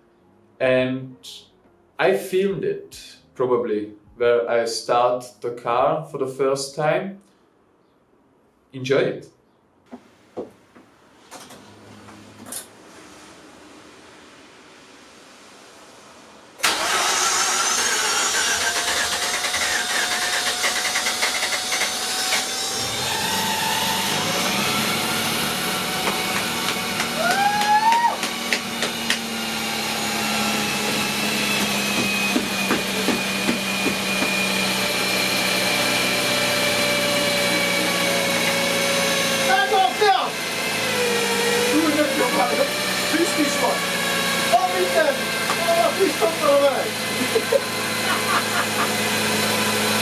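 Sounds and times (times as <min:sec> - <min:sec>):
rotary engine starting and running: 0:12.6 - 0:50.0.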